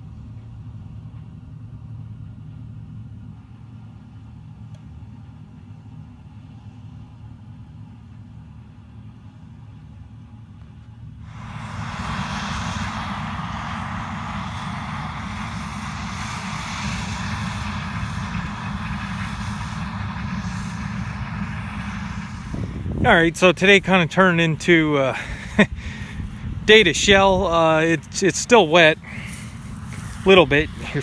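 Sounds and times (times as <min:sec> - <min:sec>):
heavy engine rumbling: 0:11.2 - 0:31.0
loud rushing noise: 0:11.3 - 0:31.0.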